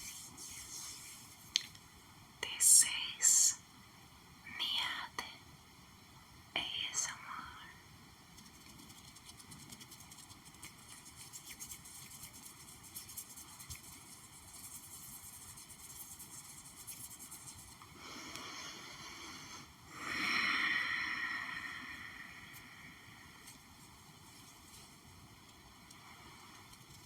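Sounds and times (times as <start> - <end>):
soft rustling: 0.0 - 1.8, 22.4 - 27.0.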